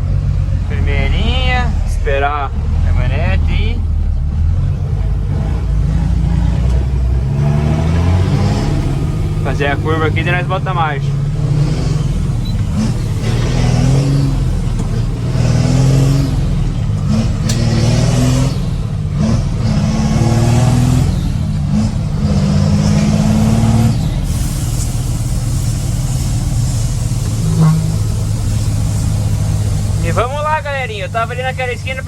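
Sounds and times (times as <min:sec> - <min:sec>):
diesel truck engine accelerating: 0:00.0 - 0:32.0.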